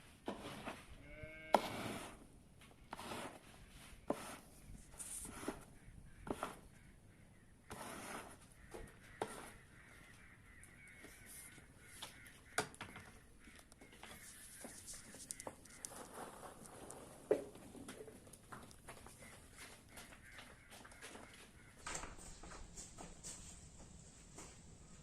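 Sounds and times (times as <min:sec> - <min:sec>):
faint bird calls: 0:04.8 - 0:17.0, 0:18.9 - 0:22.8.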